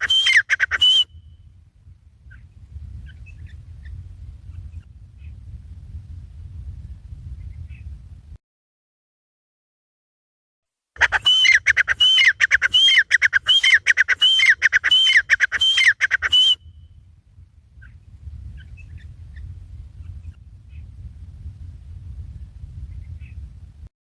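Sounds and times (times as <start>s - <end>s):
francolin calling: 0.0s - 1.4s, 11.0s - 16.8s
faint low rumble: 1.1s - 8.4s, 16.6s - 23.9s.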